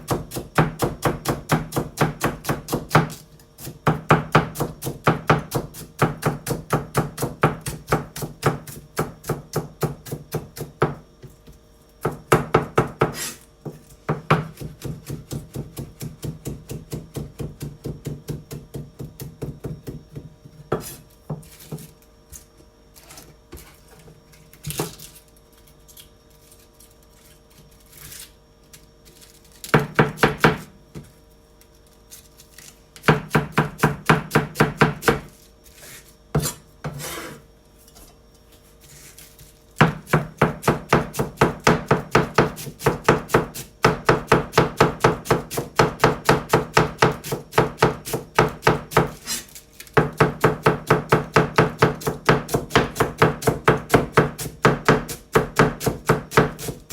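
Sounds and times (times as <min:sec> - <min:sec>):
knife chopping cabbage on board: 0:00.0 - 0:21.9, 0:29.6 - 0:31.1, 0:32.6 - 0:35.3, 0:38.8 - 0:56.9.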